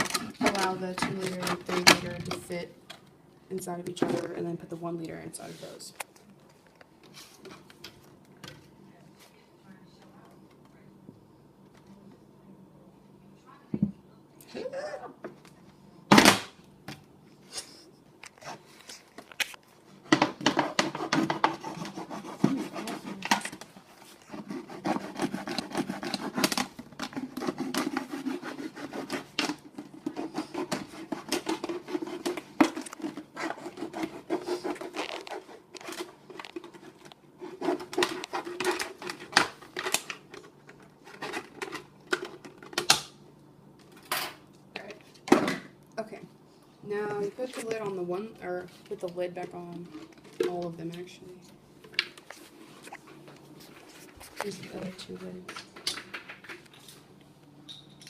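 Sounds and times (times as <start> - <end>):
plastic scraping and rubbing: 0.0 - 2.6, 18.3 - 42.8.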